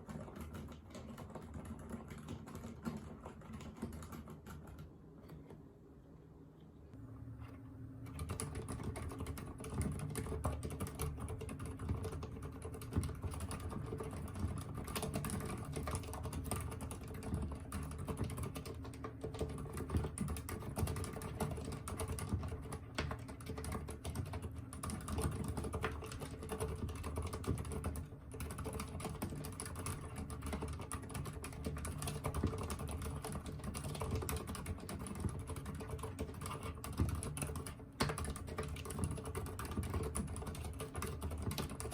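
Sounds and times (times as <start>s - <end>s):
mechanical keyboard typing: 0.0s - 5.5s, 8.1s - 41.9s.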